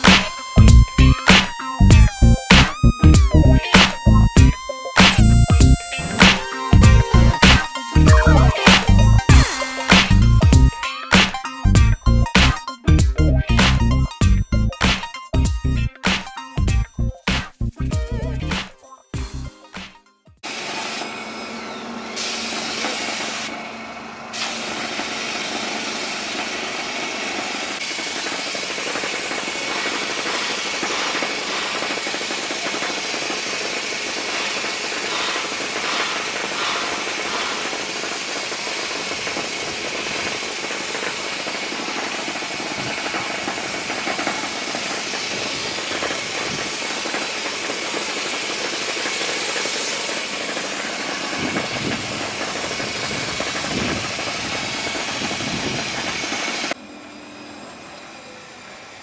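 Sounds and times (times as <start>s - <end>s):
spraying machine hissing: 0.0s - 2.0s, 3.6s - 11.4s, 22.1s - 23.6s, 24.3s - 56.8s.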